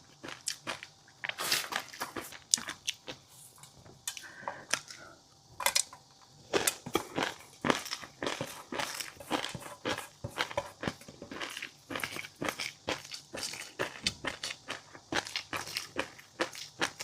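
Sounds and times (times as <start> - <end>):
chewing with crisp pops: 0.1 - 3.2.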